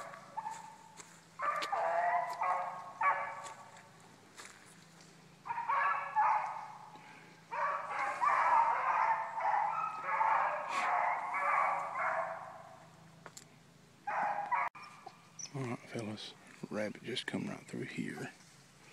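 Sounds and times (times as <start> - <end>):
beagles baying: 0.0 - 4.0, 5.4 - 13.1, 14.0 - 15.6.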